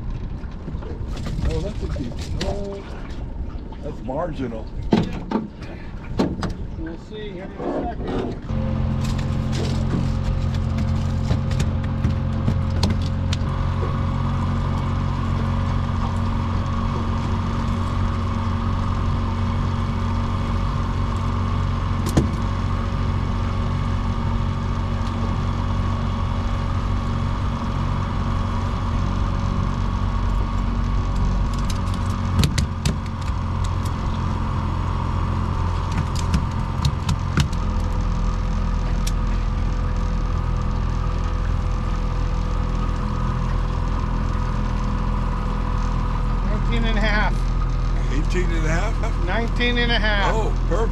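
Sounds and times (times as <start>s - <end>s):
boat motor running: 0.0s - 50.9s
light knocks on boat: 4.8s - 6.7s, 9.6s - 14.0s, 22.0s - 22.5s.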